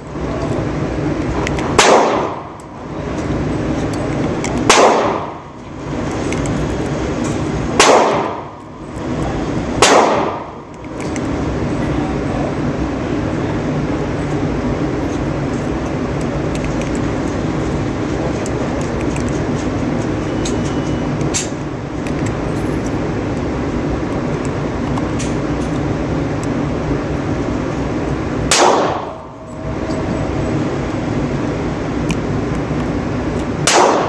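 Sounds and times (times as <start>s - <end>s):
steady rushing noise: 0.0s - 34.0s
pistol shot: 1.7s - 2.5s, 4.6s - 5.4s, 7.8s - 8.5s, 9.8s - 10.5s, 28.5s - 29.2s, 33.6s - 34.0s.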